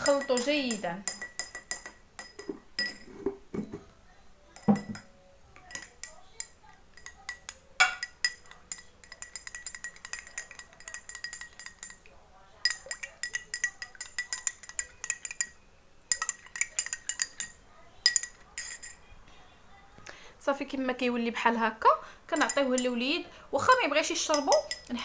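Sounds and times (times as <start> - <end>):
spoon clinking against glass: 0.0 - 3.8, 4.5 - 19.0, 22.4 - 23.0, 24.2 - 25.0.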